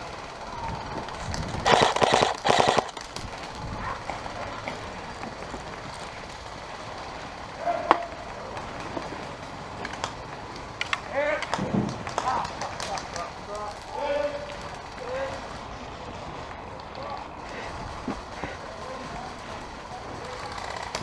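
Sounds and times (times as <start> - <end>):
airsoft gun firing: 1.6 - 3.0.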